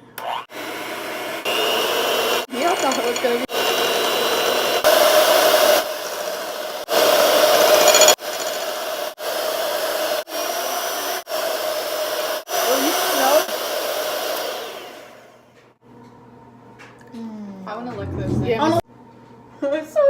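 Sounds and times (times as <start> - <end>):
electric hand mixer running: 0.0 - 15.5.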